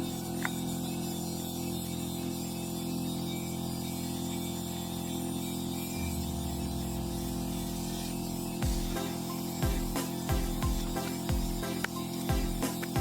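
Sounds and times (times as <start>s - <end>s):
remix music with low accompaniment: 6.0s - 13.0s.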